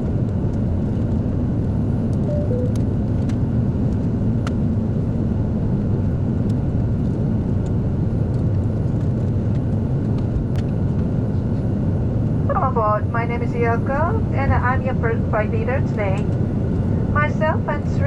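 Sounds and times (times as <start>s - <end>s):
aircraft cabin rumble: 0.0s - 18.0s
two-note descending chime: 2.3s - 2.8s.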